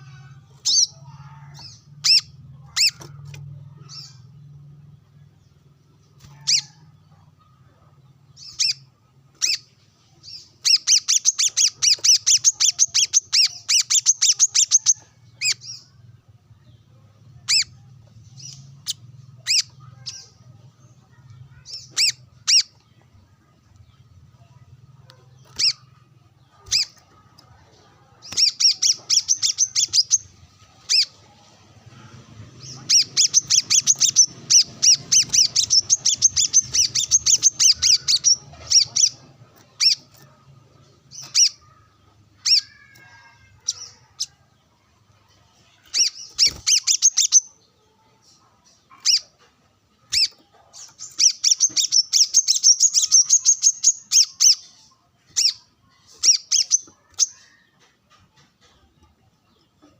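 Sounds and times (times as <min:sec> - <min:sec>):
sunbird high chirping song: 0:00.0 - 0:07.2, 0:08.1 - 0:49.3, 0:50.0 - 0:57.6.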